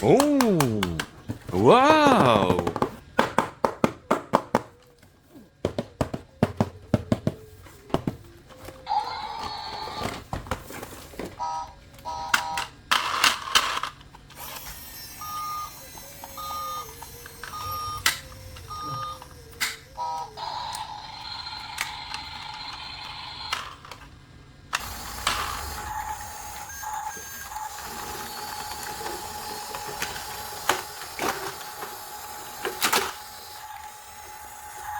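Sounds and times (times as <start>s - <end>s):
toy electronic beeps: 15.2s - 20.7s.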